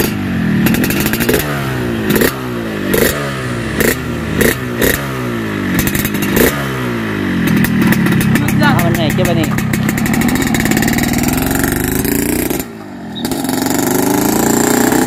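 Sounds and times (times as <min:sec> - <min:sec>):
motorcycle engine revving: 0:00.0 - 0:15.0.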